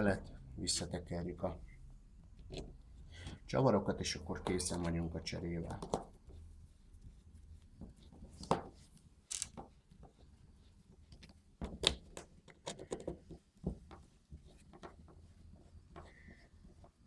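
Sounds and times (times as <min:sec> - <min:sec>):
tools handled on workbench: 0:09.3 - 0:09.7.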